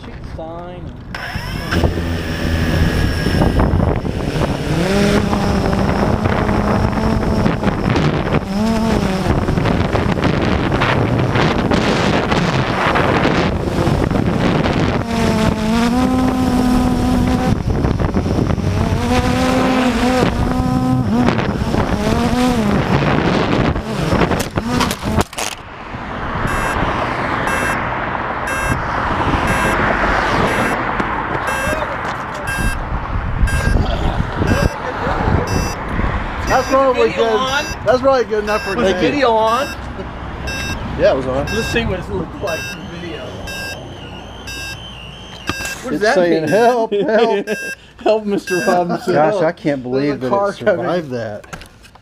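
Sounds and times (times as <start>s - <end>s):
vehicles passing on street: 0.0s - 52.0s
wind buffeting microphone: 1.0s - 41.0s
electronic beeping: 1.2s - 10.6s, 26.5s - 27.9s, 28.5s - 28.8s, 29.4s - 34.8s, 35.4s - 46.8s, 47.4s - 47.8s, 48.5s - 48.9s.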